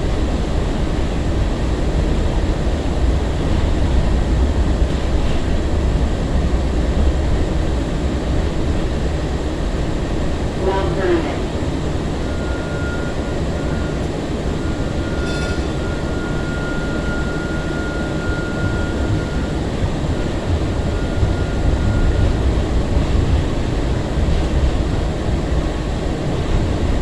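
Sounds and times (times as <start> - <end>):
rail car rumble: 0.0 - 27.0
high-pitched whine: 12.0 - 22.9.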